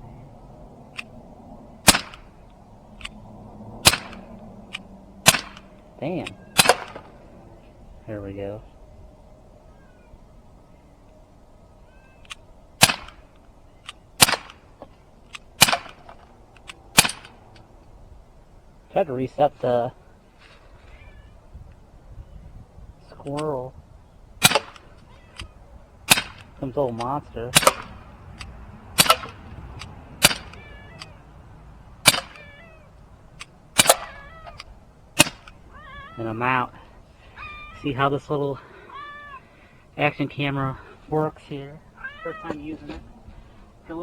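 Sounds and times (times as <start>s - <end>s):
bb pistol shots popping: 1.8s - 2.3s, 3.8s - 4.3s, 5.2s - 5.7s, 6.6s - 7.2s, 12.8s - 13.3s, 14.2s - 14.7s, 15.6s - 16.1s, 17.0s - 17.4s, 24.4s - 24.9s, 26.1s - 26.6s, 27.5s - 31.1s, 32.0s - 32.5s, 33.7s - 34.2s, 35.2s - 35.6s
high wavering animal call: 9.6s - 11.0s, 30.4s - 31.4s, 33.8s - 34.8s, 35.6s - 36.4s, 37.2s - 38.0s, 38.6s - 39.6s.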